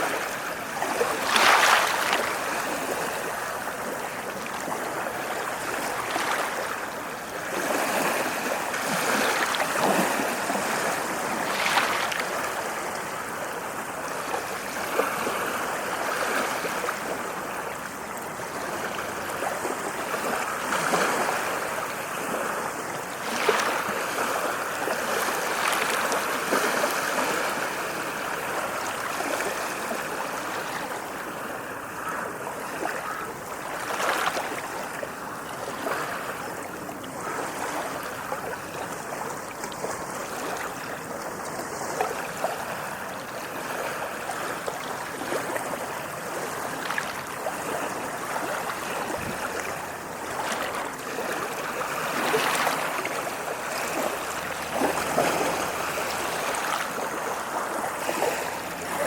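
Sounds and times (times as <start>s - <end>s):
ocean waves washing onto shore: 0.0s - 59.0s.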